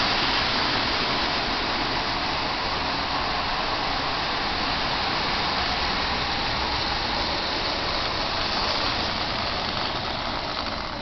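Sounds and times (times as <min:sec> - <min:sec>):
wheels running over rails: 0:00.0 - 0:11.0
toy train motors whirring: 0:04.8 - 0:11.0.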